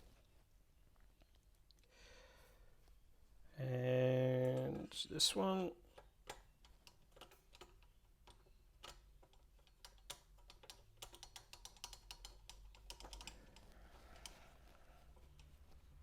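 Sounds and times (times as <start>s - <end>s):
small clicks and taps of parts: 5.8s - 15.8s.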